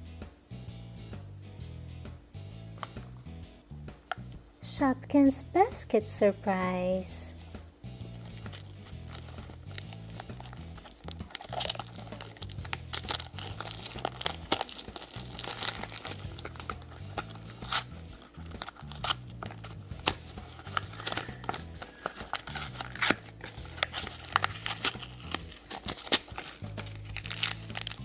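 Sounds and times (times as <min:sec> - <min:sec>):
soft background music: 0:00.0 - 0:28.0
packaging crinkling and tearing: 0:08.1 - 0:28.0.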